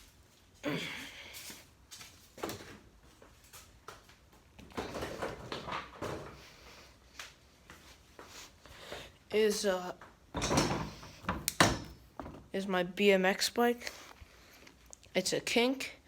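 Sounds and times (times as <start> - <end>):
bicycle knocks and clanks: 10.4 - 12.5.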